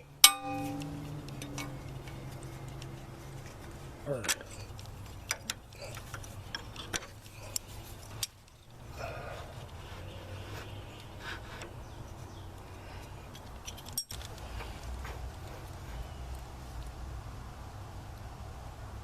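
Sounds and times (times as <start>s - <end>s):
light metallic clicks and knocks: 0.0s - 8.8s, 10.6s - 15.2s
steady low hum: 0.0s - 18.0s.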